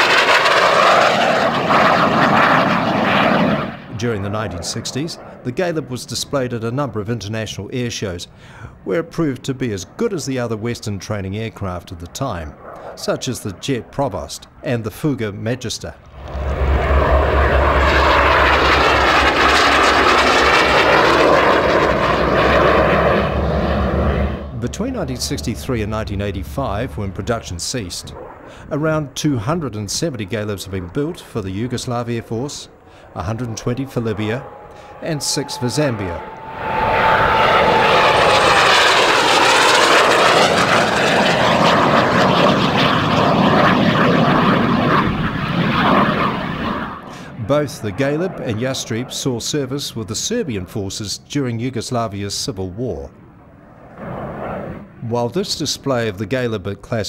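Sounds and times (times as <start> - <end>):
jet engine roaring in flight: 0.0 - 6.2, 16.0 - 50.8, 53.1 - 56.3
high whine falling in pitch: 16.1 - 28.4, 31.6 - 47.0.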